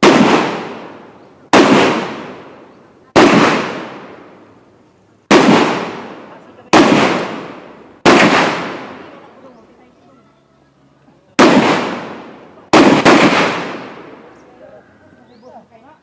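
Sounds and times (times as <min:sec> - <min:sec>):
rifle shots with echo: 0:00.0 - 0:04.4, 0:05.3 - 0:09.2, 0:11.4 - 0:14.3.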